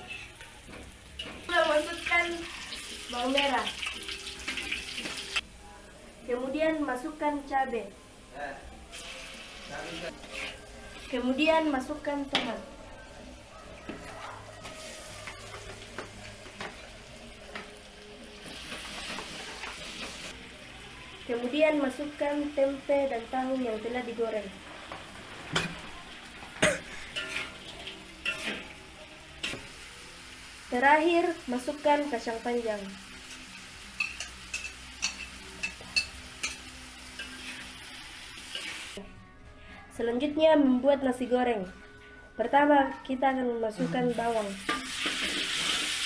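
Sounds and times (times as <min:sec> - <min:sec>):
vegetables sizzling in hot oil: 0:00.0 - 0:05.5, 0:08.9 - 0:11.2, 0:14.6 - 0:39.0, 0:44.1 - 0:46.0
spatula scraping pan: 0:10.2 - 0:10.7, 0:26.8 - 0:28.7, 0:37.2 - 0:37.8, 0:44.7 - 0:46.0.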